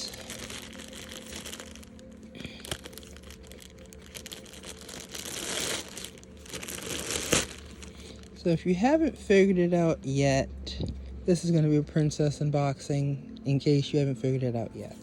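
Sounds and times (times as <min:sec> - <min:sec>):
plastic bags crinkling: 0:00.0 - 0:08.4.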